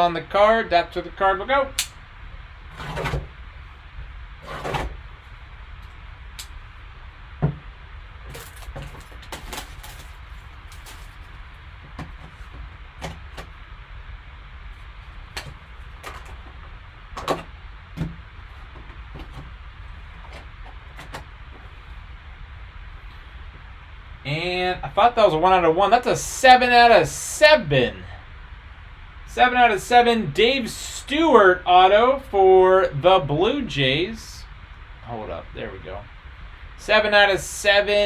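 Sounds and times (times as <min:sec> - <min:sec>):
background hiss: 0:00.0 - 0:38.0
packaging rustling: 0:08.2 - 0:13.6, 0:14.8 - 0:22.0.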